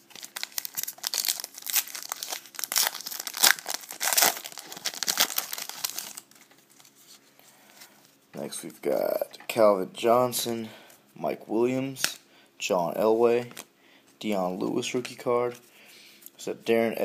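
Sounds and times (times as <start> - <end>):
card pack wrapper crinkling: 0.0 - 7.0.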